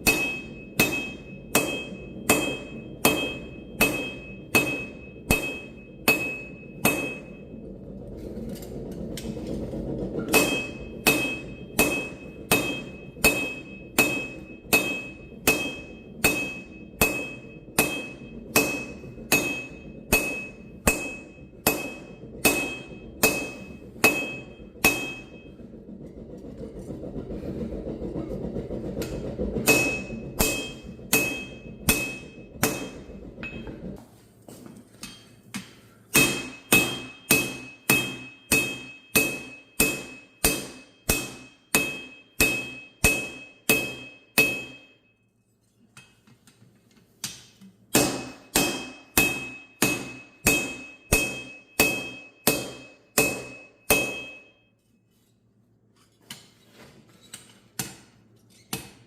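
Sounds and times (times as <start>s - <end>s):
forging hammer striking anvil: 0.0s - 7.7s, 10.1s - 27.0s, 28.3s - 34.0s, 36.1s - 45.1s, 47.9s - 54.6s
low rumble: 0.4s - 34.0s.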